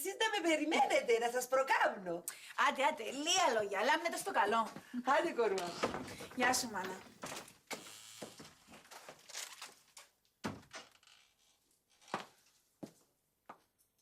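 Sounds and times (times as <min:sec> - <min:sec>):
footsteps on hard floor: 0:05.8 - 0:09.2, 0:12.1 - 0:13.7.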